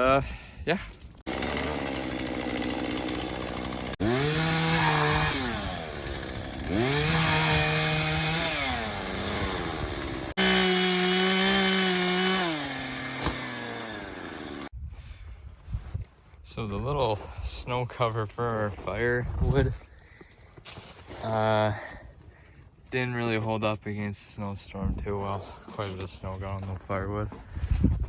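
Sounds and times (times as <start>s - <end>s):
chainsaw engine revving: 1.3s - 14.7s.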